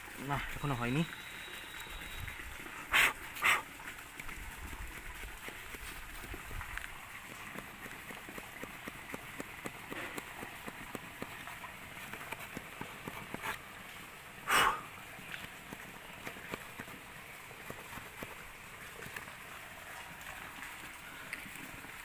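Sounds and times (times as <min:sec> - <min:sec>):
small saw cutting branch: 0:07.3 - 0:13.7.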